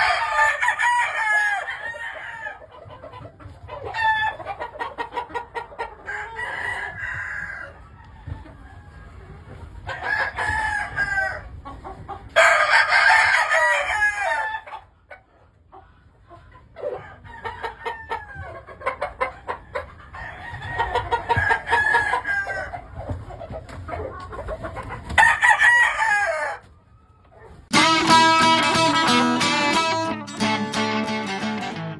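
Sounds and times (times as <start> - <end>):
roosters crowing: 0.0 - 2.7, 5.9 - 9.2, 9.8 - 11.6, 12.3 - 14.7, 16.8 - 18.6, 19.5 - 22.9, 25.1 - 26.7
chickens clucking: 0.0 - 31.9
guitar music: 27.7 - 31.9.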